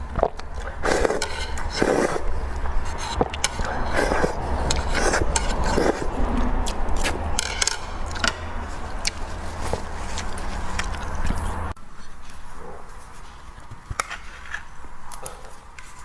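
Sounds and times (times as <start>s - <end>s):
person eating noodle soup: 0.0s - 12.4s
steady low hum: 0.0s - 15.9s.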